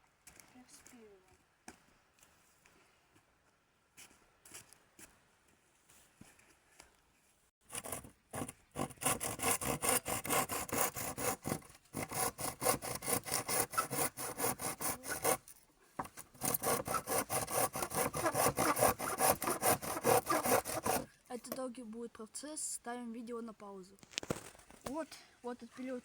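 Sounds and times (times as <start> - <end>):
hand saw cutting wood: 7.6 - 21.1.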